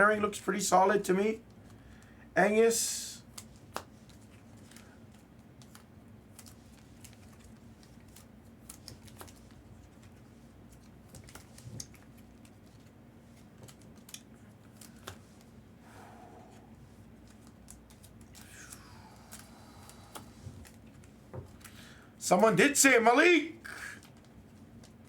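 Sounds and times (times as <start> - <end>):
trading cards clicking and scraping: 16.5 - 21.9.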